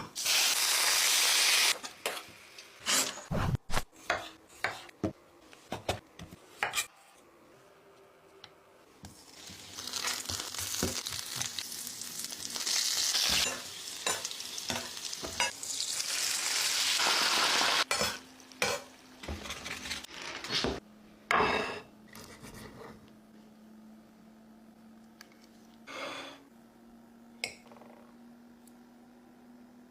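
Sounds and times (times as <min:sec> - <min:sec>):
food sizzling in a pan: 0:00.2 - 0:02.5, 0:09.1 - 0:19.1.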